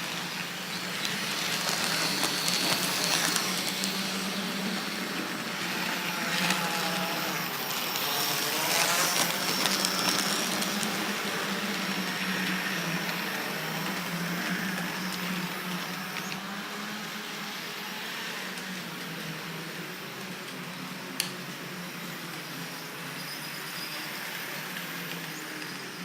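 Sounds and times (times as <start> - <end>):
electric motor hum: 0.0 - 26.0
wheels clicking on track: 0.0 - 26.0.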